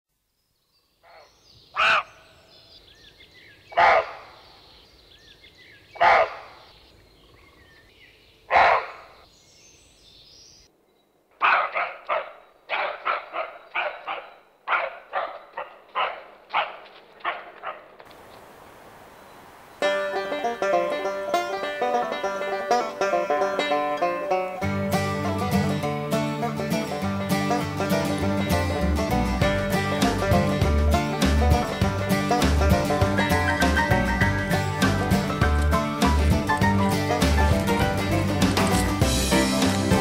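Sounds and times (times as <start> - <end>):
faint bird chirps: 0.3 - 11.5
dog barking: 1.8 - 2.1, 3.8 - 4.3, 6.0 - 6.5, 8.5 - 9.1, 11.4 - 17.9.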